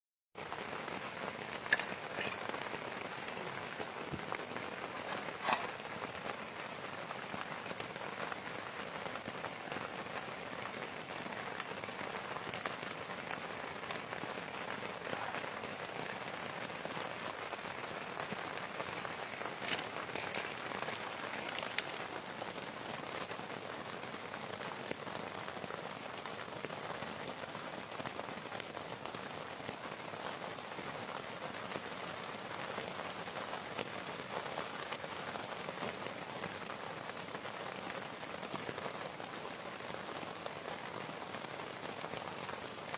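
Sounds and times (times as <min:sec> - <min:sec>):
sharp raindrop taps: 0:00.4 - 0:22.7
steady rain falling: 0:00.4 - 0:42.9.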